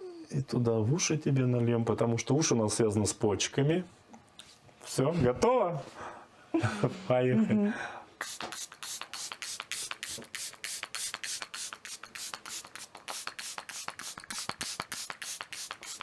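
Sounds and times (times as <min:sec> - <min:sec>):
spray bottle mist sprays: 0:08.2 - 0:16.0.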